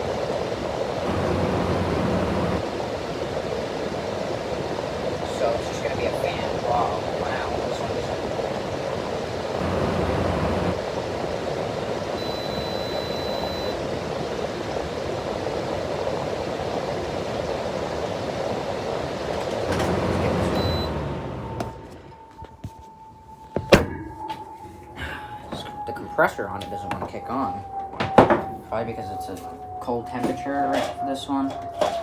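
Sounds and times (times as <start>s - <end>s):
air conditioner fan hum: 0.0s - 22.2s.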